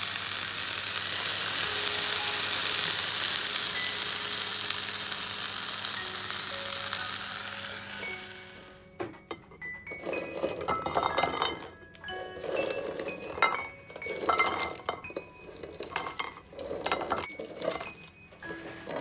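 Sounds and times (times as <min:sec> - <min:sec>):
soft background music: 0:00.8 - 0:19.0
glassware and dishes clinking: 0:08.9 - 0:19.0.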